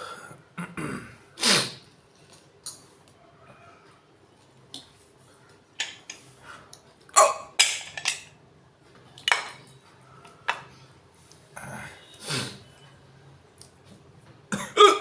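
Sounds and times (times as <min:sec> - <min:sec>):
person hiccuping: 0:07.2 - 0:07.6, 0:14.6 - 0:15.0.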